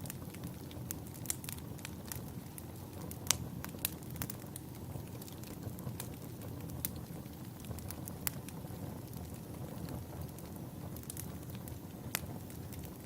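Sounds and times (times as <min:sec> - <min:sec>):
logs crackling and popping: 0:00.0 - 0:13.0
low rumble of flames: 0:00.0 - 0:13.0.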